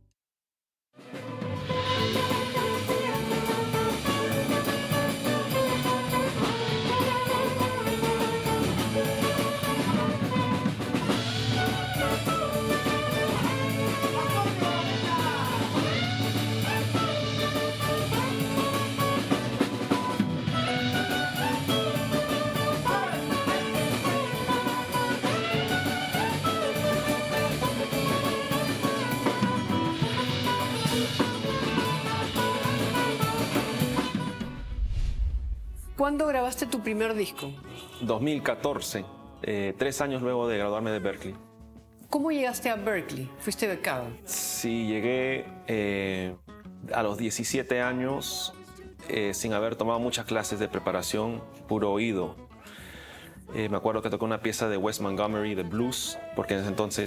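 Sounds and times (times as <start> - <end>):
drum kit: 1.0 - 37.9
guitar melody: 1.7 - 34.7, 46.4 - 46.8.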